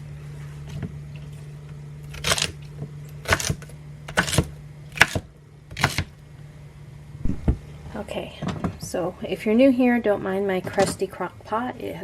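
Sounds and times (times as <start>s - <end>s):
knife chopping on cutting board: 3.2s - 6.1s.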